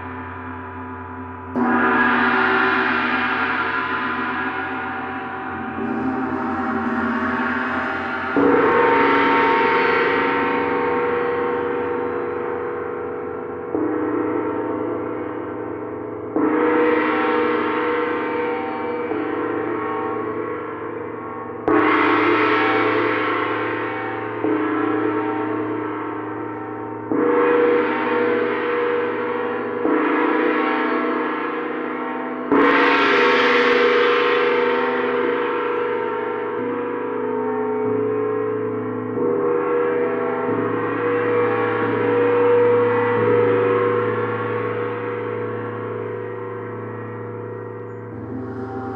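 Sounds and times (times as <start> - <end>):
large gongs struck: 0.0 - 48.9
gong ringing wash: 1.5 - 12.0, 38.9 - 48.9.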